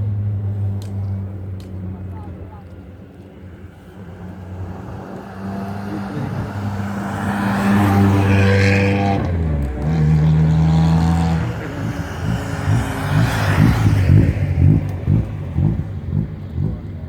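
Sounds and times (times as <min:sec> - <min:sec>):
car engine driving past: 0:03.6 - 0:17.0.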